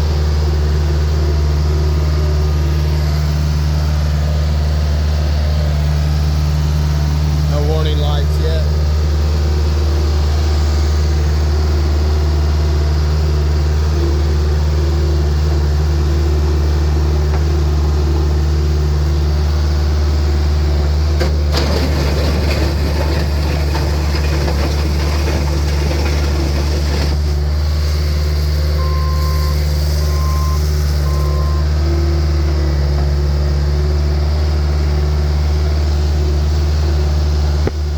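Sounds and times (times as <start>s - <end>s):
diesel engine running: 0.0s - 37.9s
rattling noise: 21.2s - 27.5s
back-up alarm beeping: 28.8s - 31.7s.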